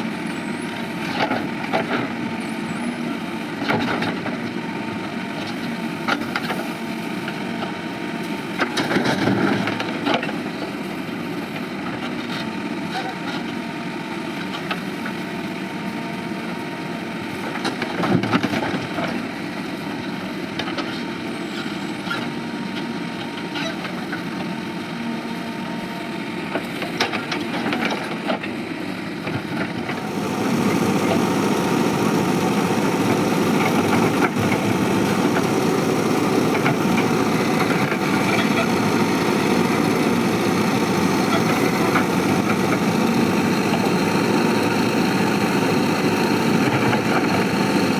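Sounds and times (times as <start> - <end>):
diesel engine running: 0.0 - 47.9.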